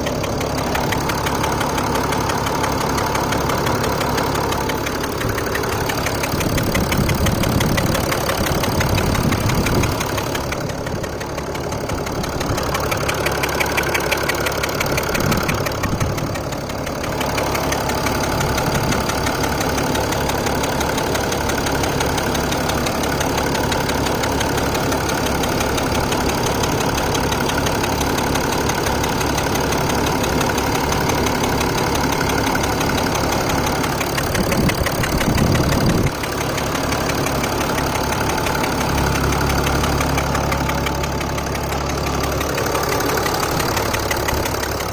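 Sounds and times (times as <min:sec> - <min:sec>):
diesel engine idling: 0:00.0 - 0:44.9
fast metallic engine ticking: 0:00.0 - 0:44.9.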